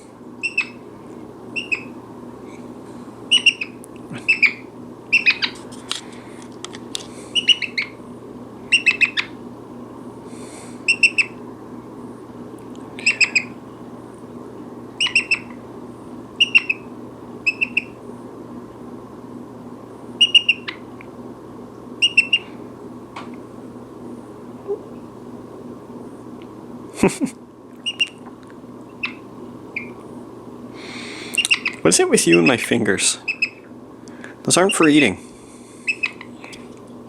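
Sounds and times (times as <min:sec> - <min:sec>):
parrot high-pitched calls: 0:00.4 - 0:00.9, 0:01.5 - 0:02.0, 0:03.3 - 0:05.6, 0:07.3 - 0:08.0, 0:08.7 - 0:09.4, 0:10.8 - 0:11.4, 0:13.0 - 0:13.6, 0:15.0 - 0:15.6, 0:16.4 - 0:18.0, 0:20.2 - 0:20.9, 0:22.0 - 0:22.6, 0:27.8 - 0:28.2, 0:28.9 - 0:30.0, 0:31.2 - 0:32.6, 0:33.2 - 0:33.7, 0:35.8 - 0:36.4.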